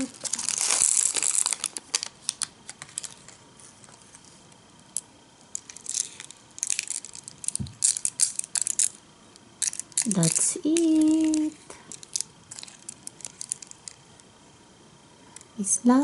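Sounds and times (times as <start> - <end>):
packet crinkling: 0.0 - 4.2, 5.4 - 14.0
candy balls clicking: 4.9 - 14.0.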